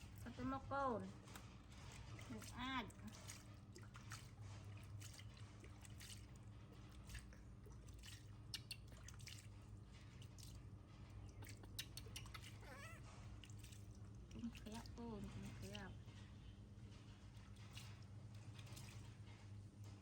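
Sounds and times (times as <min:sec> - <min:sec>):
low steady hum: 0:00.0 - 0:20.0
faint wet clicks and taps: 0:01.2 - 0:02.0, 0:05.1 - 0:20.0.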